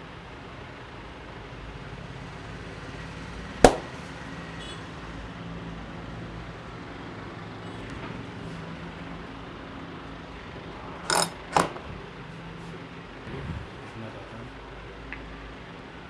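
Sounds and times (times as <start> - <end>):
sharp loud smack: 3.6 - 4.0.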